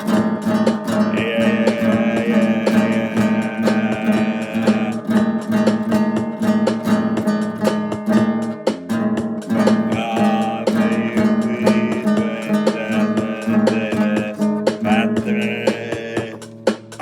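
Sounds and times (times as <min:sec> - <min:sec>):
strummed acoustic guitar: 0:00.0 - 0:17.0.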